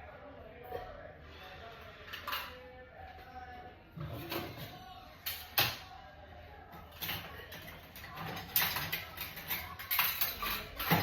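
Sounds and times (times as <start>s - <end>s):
dishes clinking and knocking: 6.9s - 11.0s.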